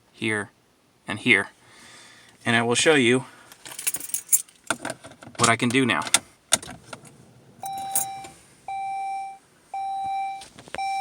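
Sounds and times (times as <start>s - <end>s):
dashboard chime beeping: 7.6s - 11.0s.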